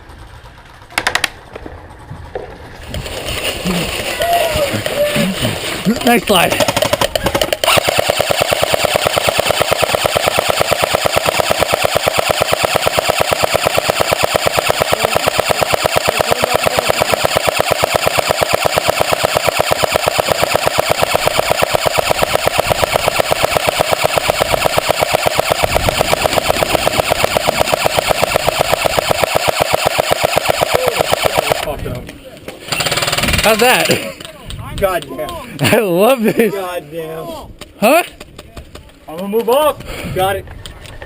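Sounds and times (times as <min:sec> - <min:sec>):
airsoft gun firing full auto: 0:00.9 - 0:01.5, 0:06.3 - 0:31.8, 0:32.7 - 0:34.1.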